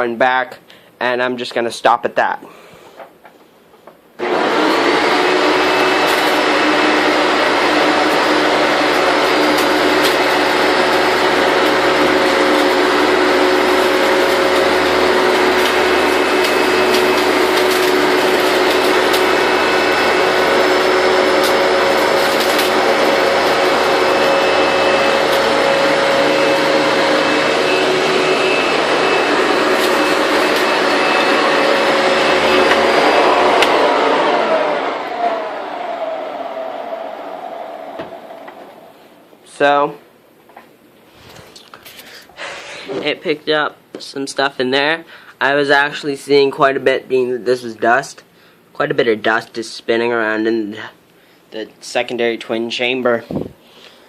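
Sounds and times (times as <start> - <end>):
upright vacuum cleaner whirring: 4.2 - 39.4.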